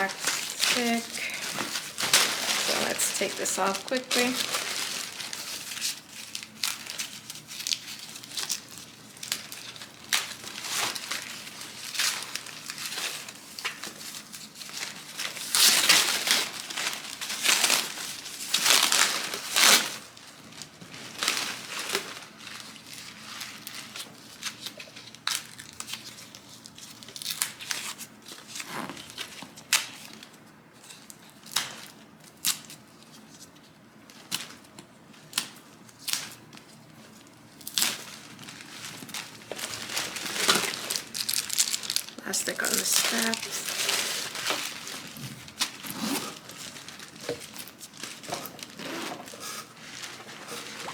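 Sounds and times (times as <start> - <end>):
packaging crumpling and tearing: 0.0 - 30.3, 34.2 - 50.9.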